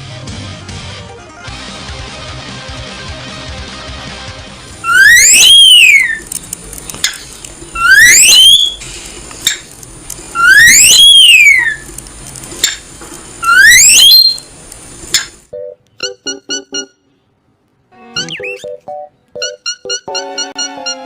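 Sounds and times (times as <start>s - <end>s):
cockatiel shrill calls: 4.8s - 6.2s, 7.8s - 8.8s, 10.4s - 11.8s, 13.4s - 14.5s.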